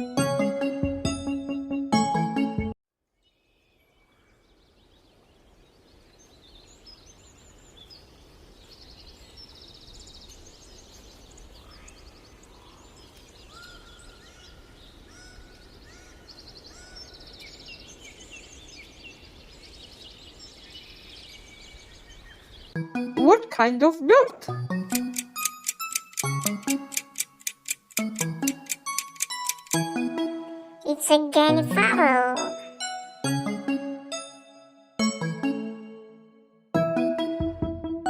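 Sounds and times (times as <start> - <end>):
birds chirping: 24.8 - 29.8.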